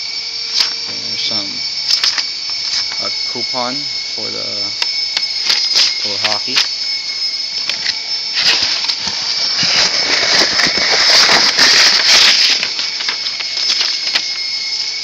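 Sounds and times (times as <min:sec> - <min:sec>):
packaging rustling and crinkling: 0:01.9 - 0:03.0, 0:07.7 - 0:14.4
small clicks: 0:01.9 - 0:03.0, 0:07.6 - 0:14.5.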